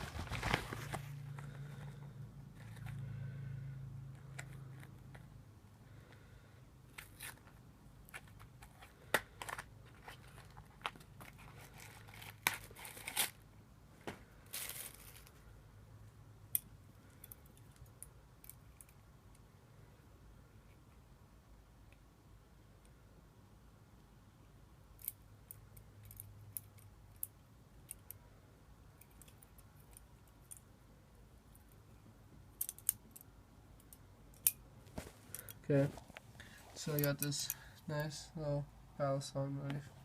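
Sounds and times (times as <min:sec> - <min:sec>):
packaging being torn and crinkled: 0:09.4 - 0:13.4.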